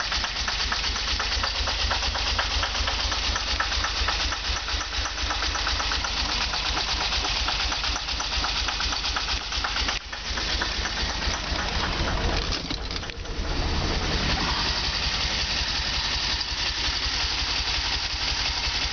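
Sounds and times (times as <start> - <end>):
car engine idling roughly: 0.0 - 18.9.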